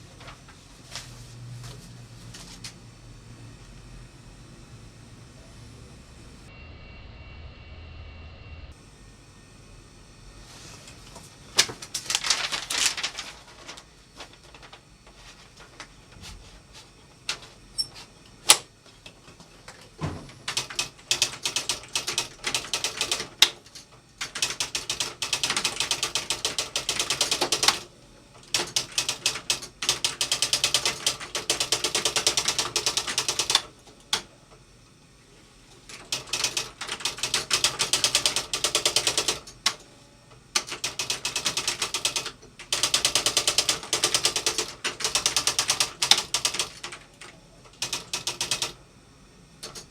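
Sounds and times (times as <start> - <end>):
typewriter key clacks: 17.3 - 18.7, 19.7 - 27.8, 28.4 - 33.7, 40.6 - 47.0.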